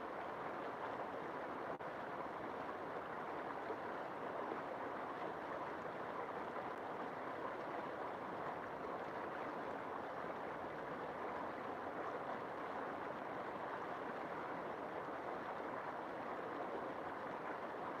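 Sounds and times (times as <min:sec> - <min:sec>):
river water flowing: 0:00.0 - 0:18.0.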